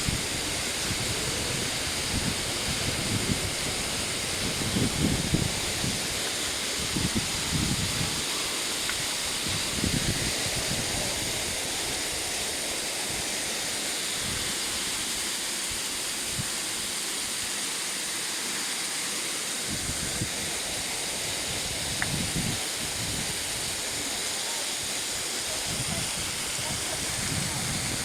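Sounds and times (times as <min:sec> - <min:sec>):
wind buffeting microphone: 0:00.0 - 0:12.5, 0:19.7 - 0:24.3, 0:24.9 - 0:28.0
waterfall roaring: 0:00.0 - 0:28.0.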